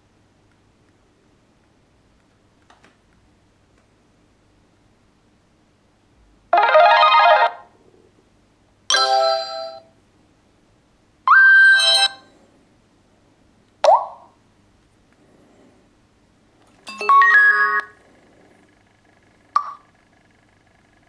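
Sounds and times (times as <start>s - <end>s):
short electronic phone chimes: 16.9s - 17.9s.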